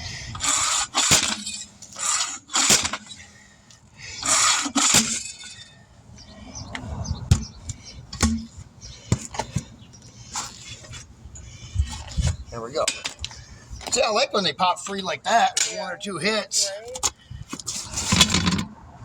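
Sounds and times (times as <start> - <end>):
tire bead popping free: 0.4 - 5.6.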